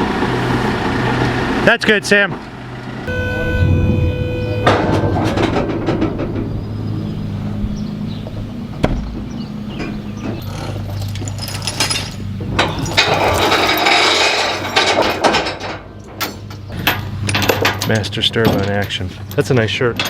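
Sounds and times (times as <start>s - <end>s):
diesel engine running: 0.0s - 17.6s
metallic clanks: 3.1s - 7.2s.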